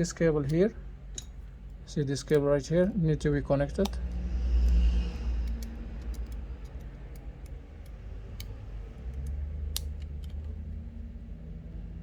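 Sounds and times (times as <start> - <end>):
steady low hum: 0.0 - 12.0
clicks of small tools and parts: 3.8 - 10.6.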